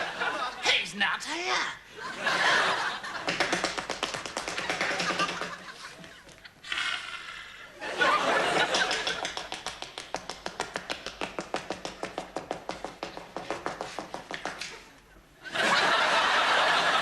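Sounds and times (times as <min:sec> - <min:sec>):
rapid even tapping: 0:08.8 - 0:14.7.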